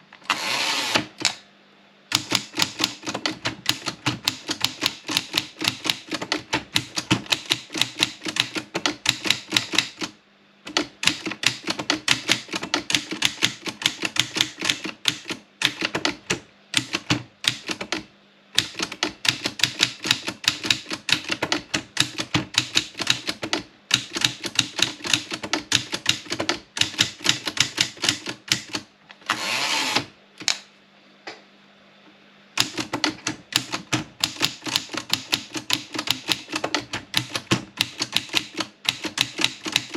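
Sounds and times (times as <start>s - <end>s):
typewriter carriage return: 2.1s - 10.1s, 10.7s - 18.0s, 18.6s - 30.1s, 32.6s - 39.9s
typewriter key strikes: 2.1s - 10.1s, 10.7s - 18.0s, 18.6s - 28.8s, 32.6s - 39.9s.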